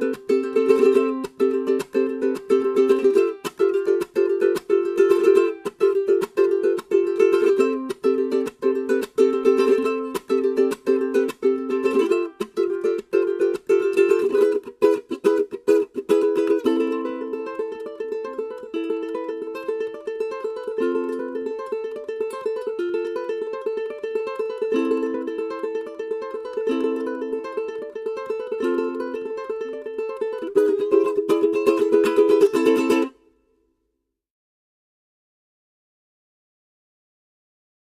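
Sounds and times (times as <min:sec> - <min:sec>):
ukulele strummed chords: 0:00.0 - 0:33.4
ukulele picked melody: 0:00.0 - 0:33.5.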